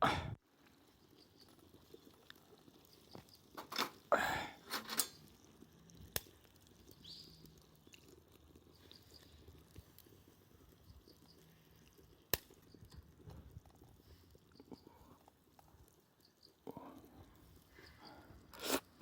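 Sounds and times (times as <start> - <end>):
eating mouth noises: 5.9 - 19.0.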